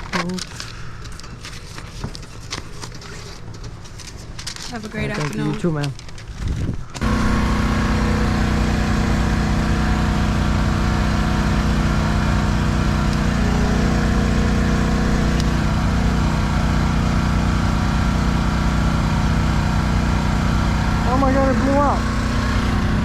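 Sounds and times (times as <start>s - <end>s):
vehicle engine idling: 7.0s - 23.0s.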